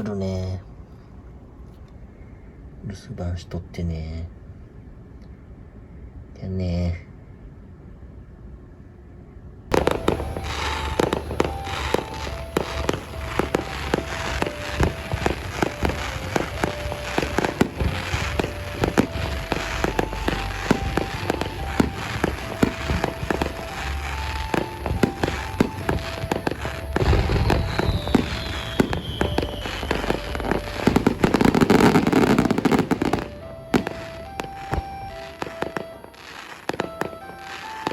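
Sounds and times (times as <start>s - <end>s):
falling firework whistle: 9.7s - 37.9s
fireworks bangs and crackles: 9.7s - 37.9s
light background music: 9.7s - 37.9s.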